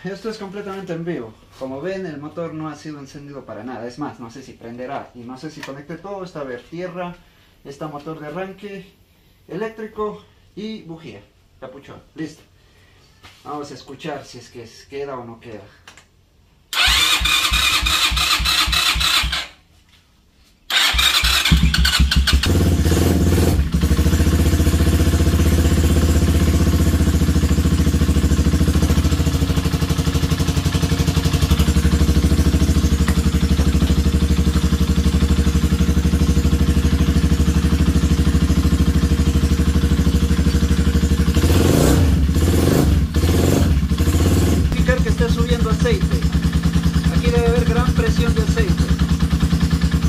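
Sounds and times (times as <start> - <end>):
electric starter cranking: 16.7 - 19.6, 20.7 - 22.6
motorcycle engine idling: 20.8 - 50.0.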